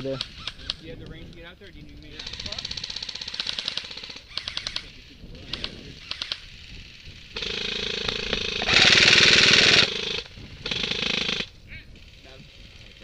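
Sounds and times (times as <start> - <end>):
airsoft guns firing full auto: 2.1 - 6.6, 7.3 - 11.5.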